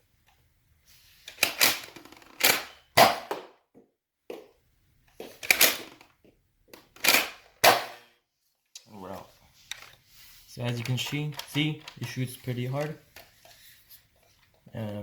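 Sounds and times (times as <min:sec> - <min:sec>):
toy blaster plastic clacks and shots: 0:01.3 - 0:03.5, 0:05.4 - 0:06.1, 0:06.8 - 0:08.2.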